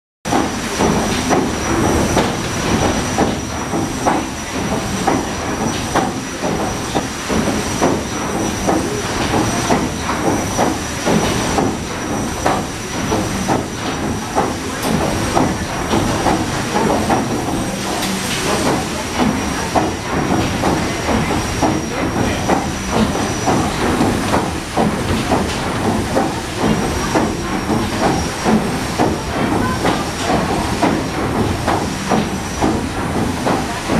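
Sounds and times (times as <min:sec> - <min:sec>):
steam engine rhythmic strokes: 0:00.3 - 0:33.9.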